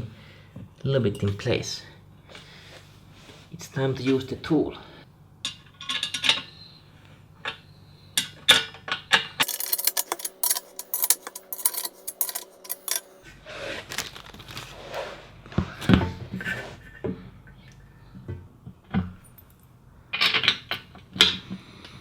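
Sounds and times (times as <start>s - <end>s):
hand tool clicking on metal: 9.4s - 13.2s.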